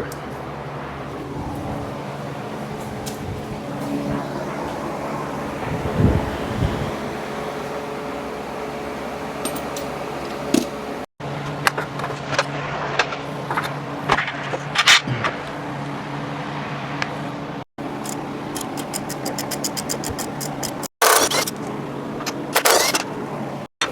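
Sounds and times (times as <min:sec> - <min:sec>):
steady background hum: 0:00.0 - 0:23.9
metallic clicks of hand tools: 0:18.0 - 0:21.7.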